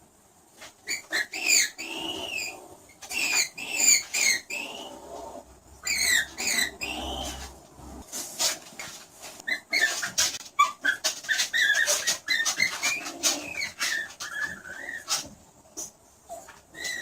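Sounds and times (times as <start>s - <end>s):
skunk squeaking: 0.8s - 7.5s, 9.4s - 15.3s, 16.3s - 17.0s.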